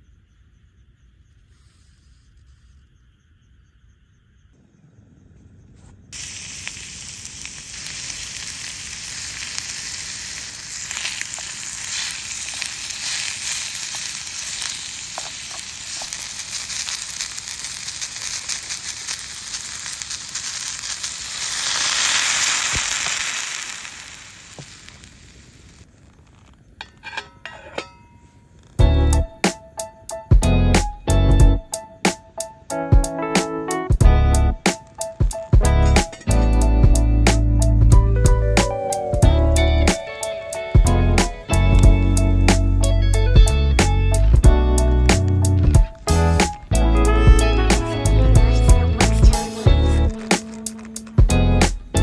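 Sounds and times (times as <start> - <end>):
food sizzling in a pan: 6.1 - 25.9, 38.6 - 52.0.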